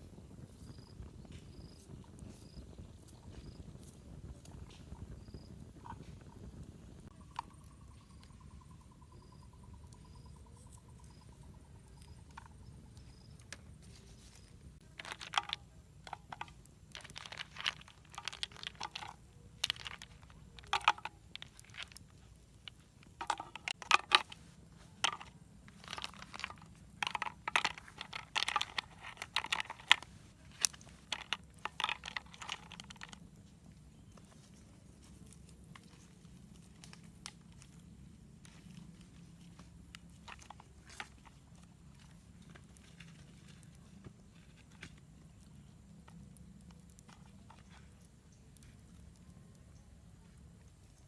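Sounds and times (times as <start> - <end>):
crunching handling noise: 11.9 - 51.0.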